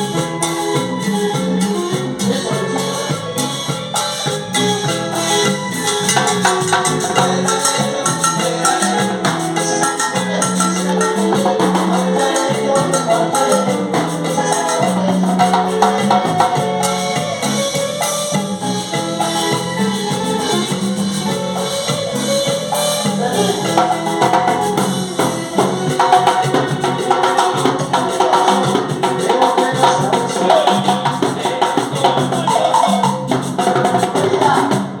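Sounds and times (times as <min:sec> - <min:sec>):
latin music with percussion: 0:00.0 - 0:35.0.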